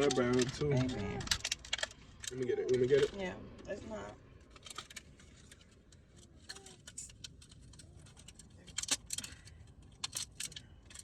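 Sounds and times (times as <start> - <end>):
candy wrappers crinkling: 0.0 - 3.2, 4.4 - 11.0.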